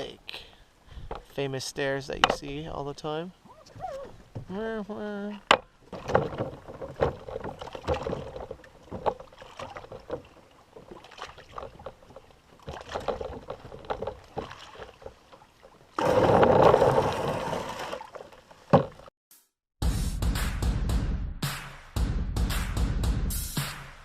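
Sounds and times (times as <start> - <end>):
water at the shore: 0.0 - 19.1
canoe hull knocking: 5.5 - 15.2, 18.7 - 19.1.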